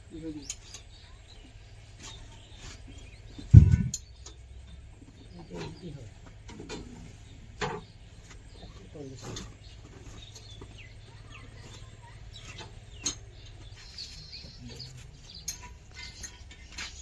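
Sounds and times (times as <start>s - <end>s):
steady low hum: 0.0s - 17.0s
indistinct voices: 5.0s - 17.0s.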